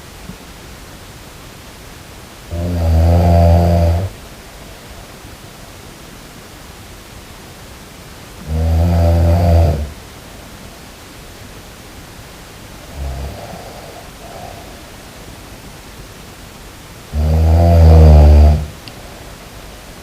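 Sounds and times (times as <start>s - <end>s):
steady hiss: 0.0s - 20.0s
long low snores: 2.5s - 4.2s, 8.4s - 10.0s, 12.8s - 15.0s, 17.1s - 18.8s.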